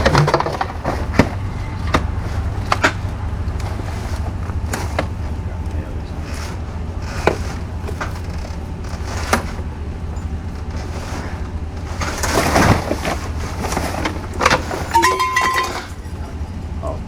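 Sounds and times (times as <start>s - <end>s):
sharp knocks of scrap metal: 0.0s - 5.2s, 10.6s - 16.2s
metal scraping clatter: 0.0s - 17.0s
steady low rumble: 0.0s - 17.0s.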